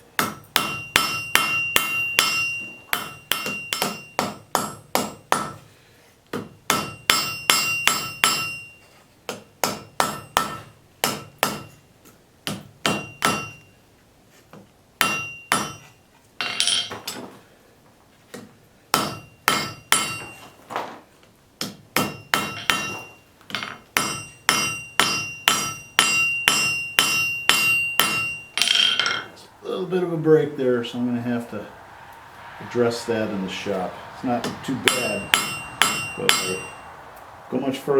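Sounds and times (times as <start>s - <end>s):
hammer striking steel on anvil: 0.2s - 5.6s, 6.3s - 8.7s, 9.6s - 11.8s, 12.5s - 13.6s, 15.0s - 15.8s, 18.9s - 20.4s, 21.6s - 29.4s, 34.0s - 37.0s.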